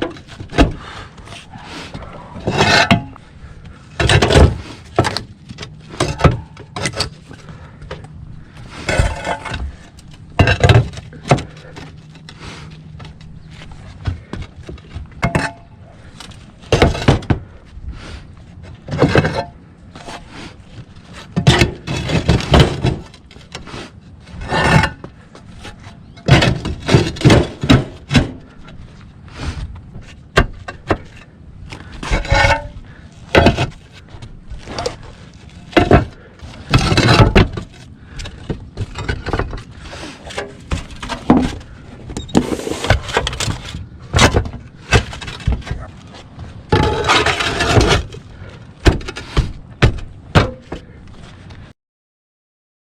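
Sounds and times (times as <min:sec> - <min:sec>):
roof tiles knocking and clinking: 0:08.8 - 0:12.4, 0:13.0 - 0:17.5, 0:21.1 - 0:23.5, 0:24.4 - 0:28.7, 0:29.9 - 0:51.0
tile scraping: 0:46.7 - 0:48.0.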